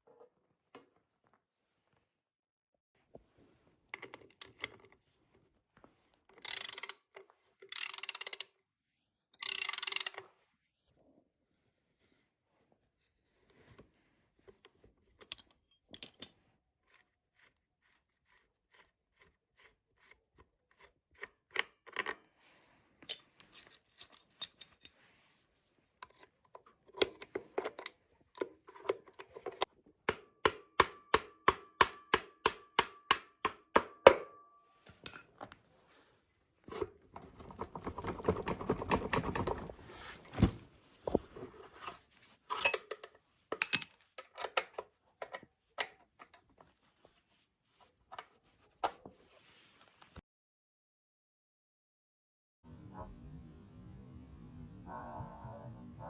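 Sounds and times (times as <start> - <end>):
hand tools clicking and knocking: 26.0 - 34.3, 42.5 - 46.4
rubbing or scraping: 35.8 - 42.5.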